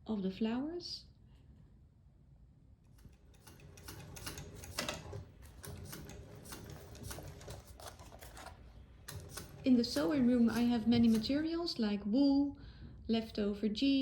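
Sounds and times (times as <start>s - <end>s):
sewing machine stitching: 3.0s - 11.8s.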